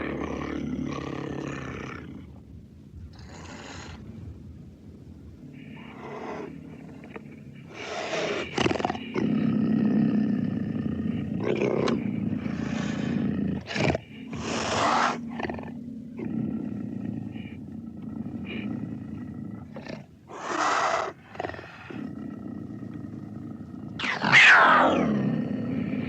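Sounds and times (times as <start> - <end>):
cougar snarling: 0.0 - 2.3, 3.1 - 4.1, 5.5 - 26.0
cougar low growl: 0.0 - 4.3, 5.4 - 26.0.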